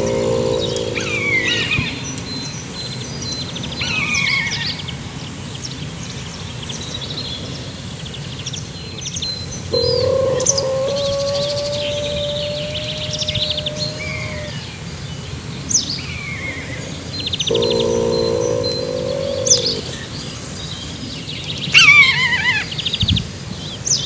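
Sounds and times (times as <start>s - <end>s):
songbirds chirping and trilling: 0.0s - 4.6s, 9.4s - 15.2s, 15.8s - 24.0s.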